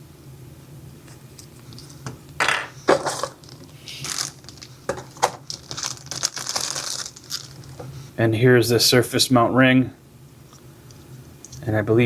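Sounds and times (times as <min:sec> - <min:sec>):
rustling: 0:05.4 - 0:07.9.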